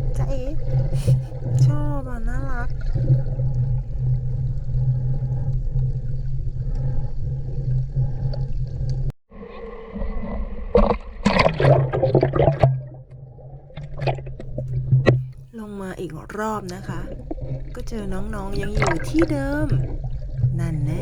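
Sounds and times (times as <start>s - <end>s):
low underwater hum: 0.0s - 10.8s, 11.6s - 21.0s
bubbling and splashing underwater: 10.7s - 15.5s, 16.2s - 21.0s.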